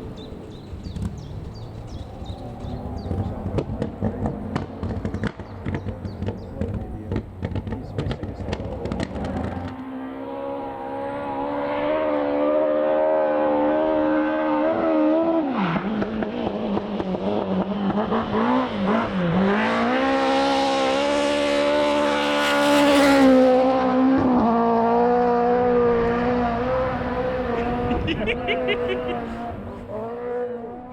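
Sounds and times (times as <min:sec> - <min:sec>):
rally car engine at high revs: 0:00.6 - 0:30.9.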